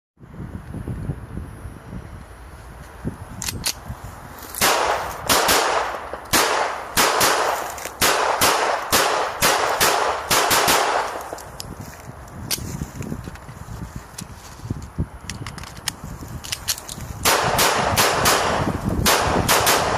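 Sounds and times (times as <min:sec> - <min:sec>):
pistol shots echoing: 0:04.6 - 0:11.3, 0:17.2 - 0:19.9.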